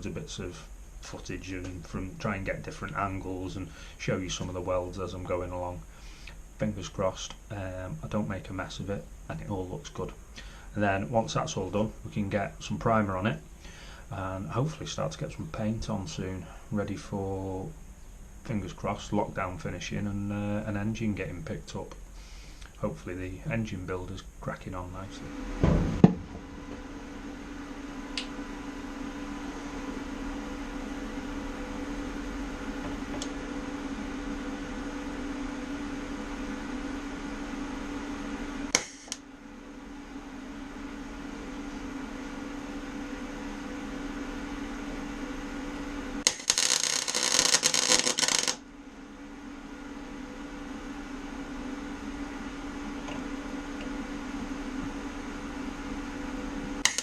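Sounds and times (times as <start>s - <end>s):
steady hum: 0.0s - 57.0s
welding arc crackle: 38.7s - 39.2s, 46.2s - 48.6s, 56.8s - 57.0s.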